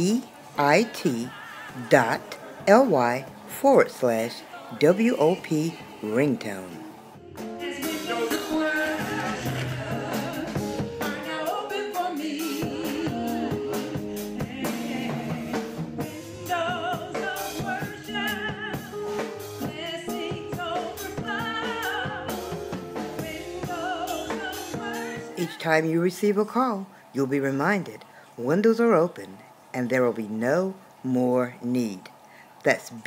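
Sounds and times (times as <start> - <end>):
backing instruments: 0.0 - 25.6
gospel singing: 0.0 - 33.0
drum kit: 7.2 - 11.6, 12.2 - 25.5.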